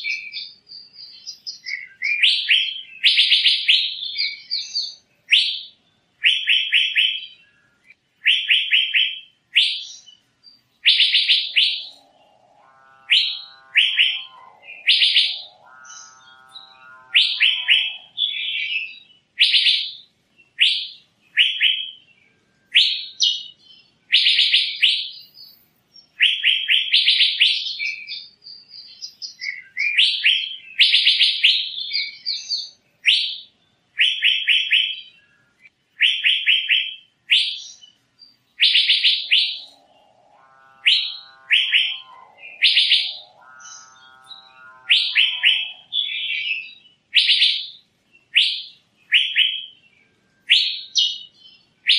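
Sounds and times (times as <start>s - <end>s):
lower bird call: 0.0s - 51.9s
bird calling rapid high notes: 10.9s - 19.8s, 38.6s - 47.6s.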